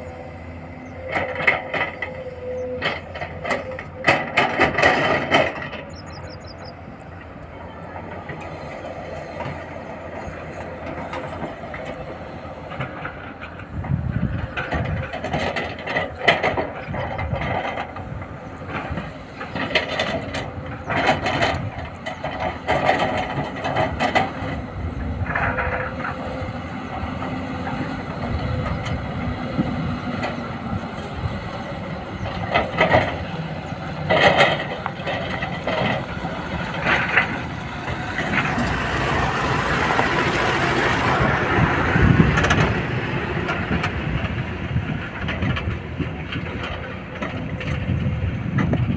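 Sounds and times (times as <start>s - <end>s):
excavator engine running: 0.0s - 48.9s
metallic clanks and knocks: 0.9s - 6.7s, 32.2s - 48.9s.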